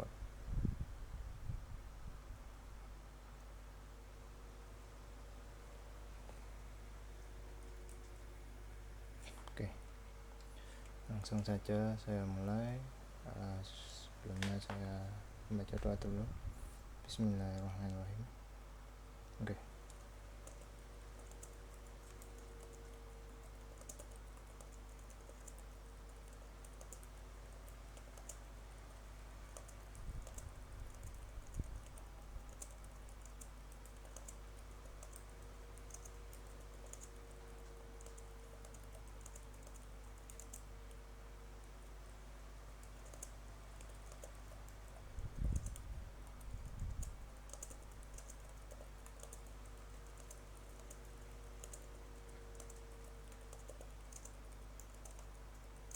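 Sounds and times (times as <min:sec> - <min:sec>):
muffled keyboard typing: 0:14.3 - 0:16.3, 0:17.0 - 0:18.1, 0:19.4 - 0:42.0, 0:42.6 - 0:55.9.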